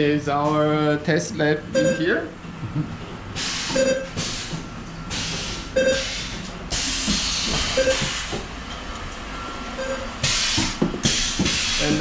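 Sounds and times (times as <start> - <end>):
compressed air hissing: 3.4 - 8.4, 10.2 - 12.0
short beep tone: 7.8 - 8.1, 9.4 - 10.1.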